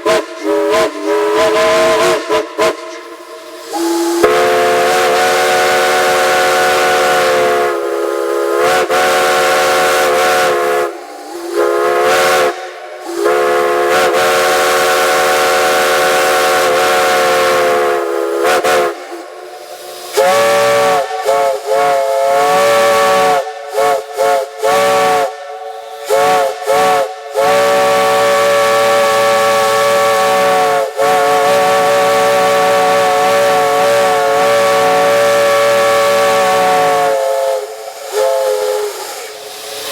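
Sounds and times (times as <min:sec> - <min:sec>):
steam whistle short quick toots: 0:00.0 - 0:19.1, 0:20.1 - 0:39.9
multi-chime steam whistles blowing: 0:00.0 - 0:39.9.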